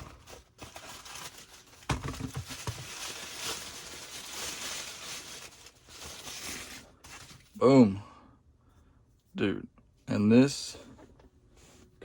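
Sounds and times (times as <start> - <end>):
wrapping crinkling and rustling: 0.0 - 7.6
knocks on packaging: 1.9 - 2.8.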